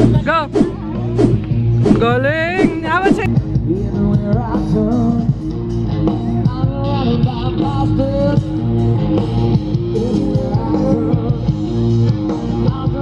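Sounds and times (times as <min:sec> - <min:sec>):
guitar: 0:00.0 - 0:13.0
rock music: 0:00.0 - 0:13.0
person singing: 0:09.8 - 0:11.9.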